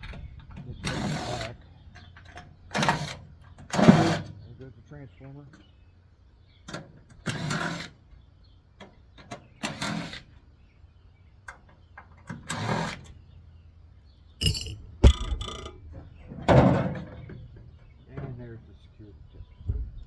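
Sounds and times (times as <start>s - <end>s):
metal clattering and ringing: 14.4s - 15.8s.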